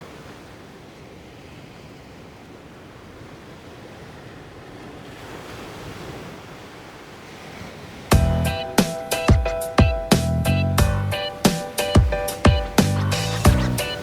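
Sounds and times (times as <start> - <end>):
wind: 0.0 - 14.0
surf washing onto sandy beach: 11.1 - 14.0.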